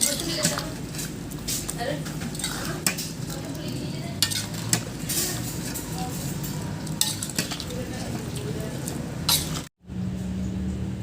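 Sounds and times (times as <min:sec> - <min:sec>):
food sizzling: 0:00.0 - 0:09.7
utensil scraping a pot: 0:00.0 - 0:09.7.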